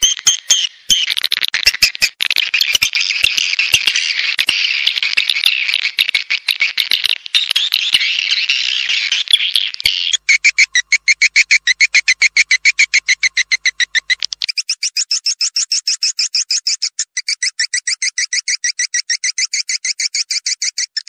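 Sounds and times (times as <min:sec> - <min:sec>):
swiftlet twittering: 0:00.0 - 0:15.8
fast run of short chirps: 0:00.0 - 0:18.0.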